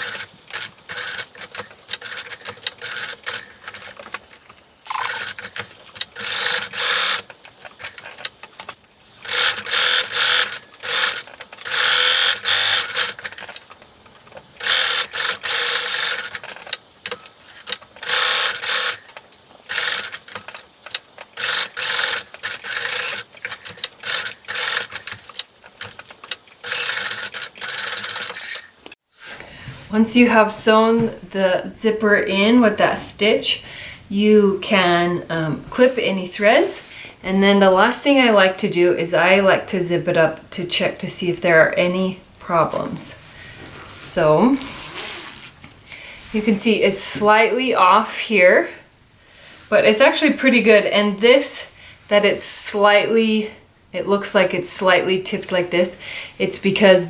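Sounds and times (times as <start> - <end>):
sewing machine stitching: 0.0 - 4.0, 4.9 - 8.2, 9.2 - 13.6, 17.6 - 19.1, 21.3 - 28.7.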